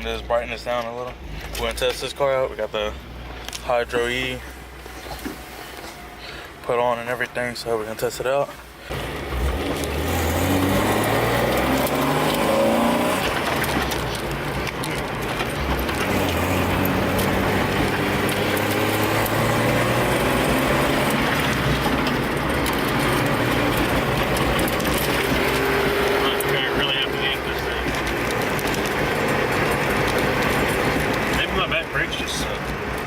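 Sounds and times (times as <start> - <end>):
road noise: 0.0 - 33.0
car engine accelerating: 8.8 - 33.0.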